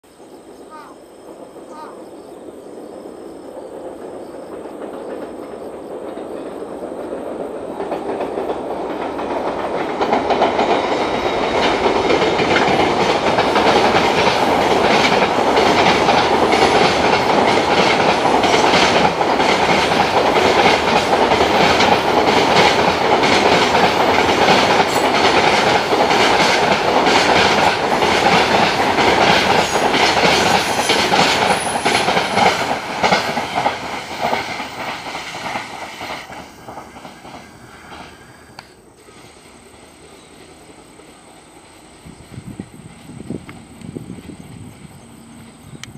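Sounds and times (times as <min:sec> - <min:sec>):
freight train passing: 0:00.0 - 0:45.9
wheels clacking on rail joints: 0:03.8 - 0:39.3.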